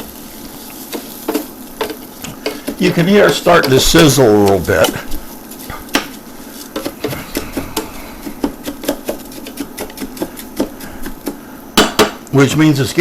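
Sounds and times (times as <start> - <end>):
rice sizzling in oil: 0.0 - 13.0
utensil scraping a pan: 0.8 - 11.4.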